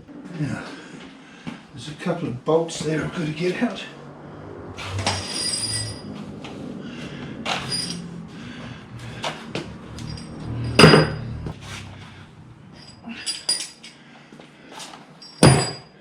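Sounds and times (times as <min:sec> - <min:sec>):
tools clinking on steel: 0:12.8 - 0:14.0, 0:15.2 - 0:15.9.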